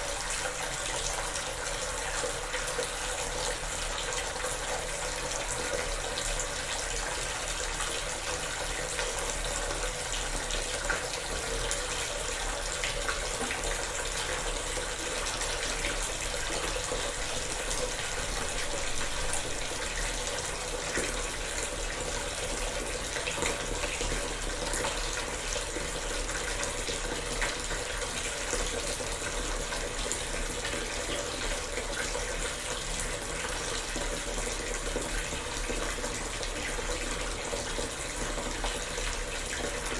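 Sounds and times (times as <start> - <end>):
tap running into bathtub: 0.2 - 39.9.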